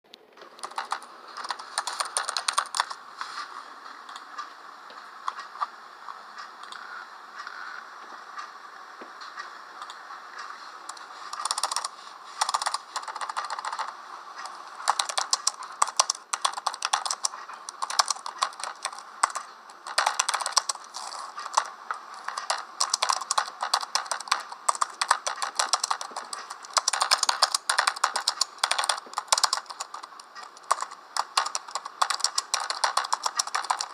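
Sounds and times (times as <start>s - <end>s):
typing on computer keyboard: 0.5s - 3.0s, 9.8s - 33.9s.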